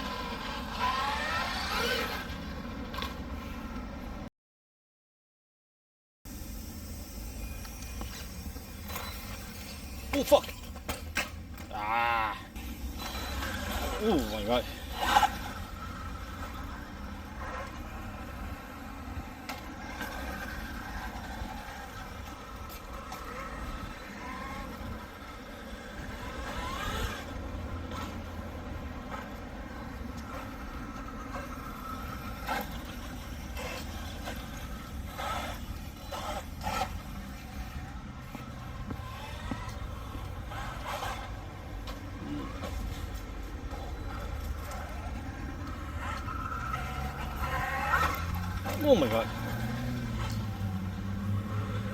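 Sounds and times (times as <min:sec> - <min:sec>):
electric motor whining: 0:00.0 - 0:03.4, 0:06.3 - 0:51.9.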